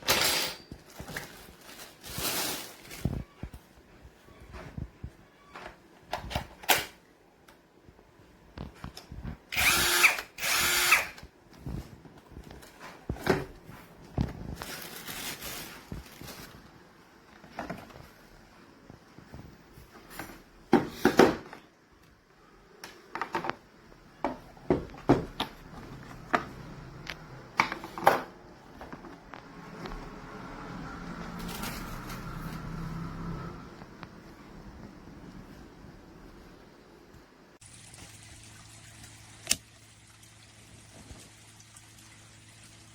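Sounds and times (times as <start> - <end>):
cordless drill running: 9.5 - 11.2.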